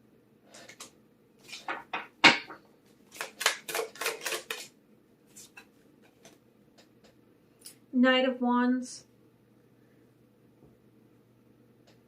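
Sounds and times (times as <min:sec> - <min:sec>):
cards rustling: 0:03.0 - 0:04.7, 0:05.3 - 0:06.4.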